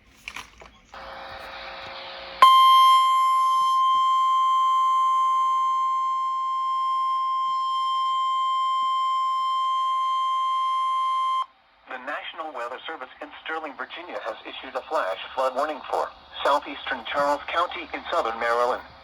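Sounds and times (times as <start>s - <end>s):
steady high alarm tone: 1.0s - 11.7s.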